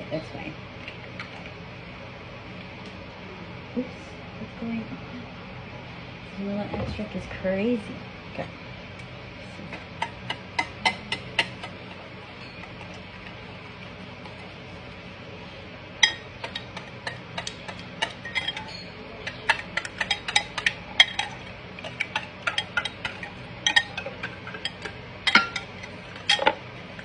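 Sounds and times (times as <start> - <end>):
utensil clinking against bowl: 9.7 - 14.6, 16.0 - 27.0.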